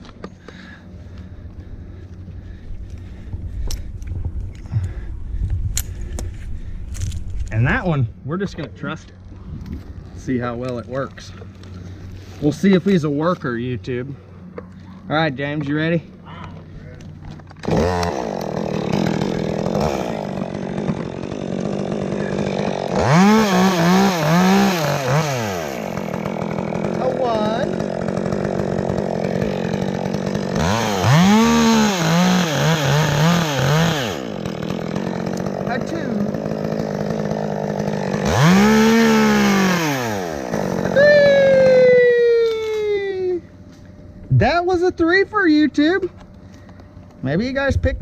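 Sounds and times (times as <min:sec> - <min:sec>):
chainsaw cutting wood: 0:16.6 - 0:44.0.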